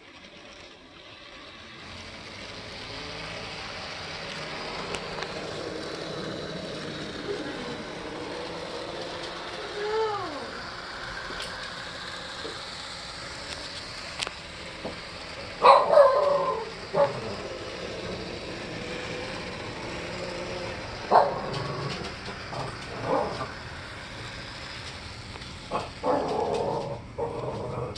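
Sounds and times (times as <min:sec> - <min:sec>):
faint running noise of model train: 0:00.0 - 0:27.9
dog barking: 0:15.6 - 0:17.2.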